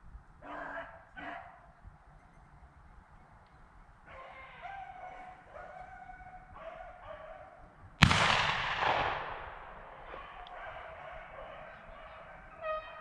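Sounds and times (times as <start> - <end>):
dogs baying: 4.0 - 7.6, 9.6 - 13.0
shotgun shot: 8.0 - 10.5.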